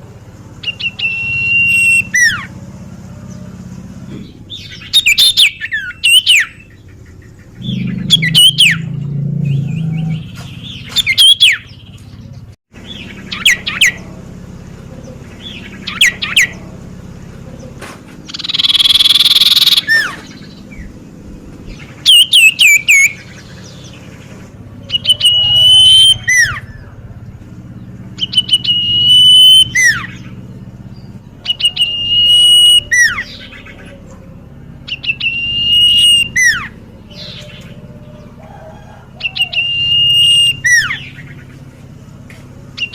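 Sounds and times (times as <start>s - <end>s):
bird whistling calls: 0.6s - 2.6s, 4.1s - 11.8s, 15.4s - 16.7s, 17.5s - 20.9s, 21.7s - 24.0s, 24.8s - 27.0s, 28.2s - 30.4s, 31.0s - 41.5s
bird harsh rasping call: 0.6s - 11.8s, 12.8s - 21.0s, 21.7s - 27.3s, 28.1s - 30.5s, 31.1s - 41.7s.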